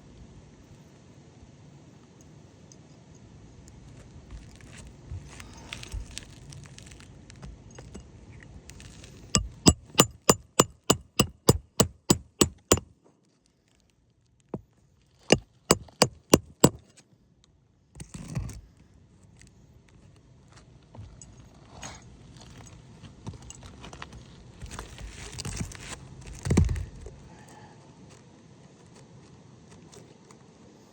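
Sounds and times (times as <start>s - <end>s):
hammer striking metal: 9.4s - 12.8s, 15.7s - 16.8s.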